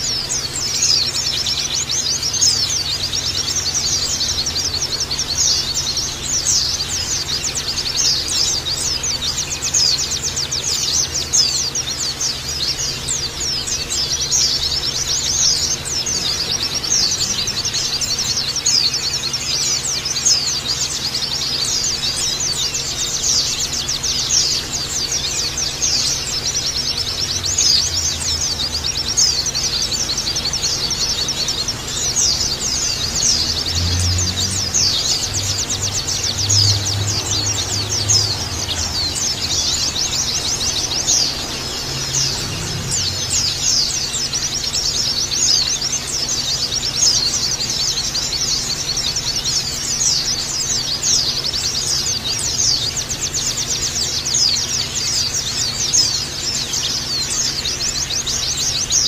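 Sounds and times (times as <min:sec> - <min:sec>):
birds chirping and twittering: 0:00.0 - 0:59.0.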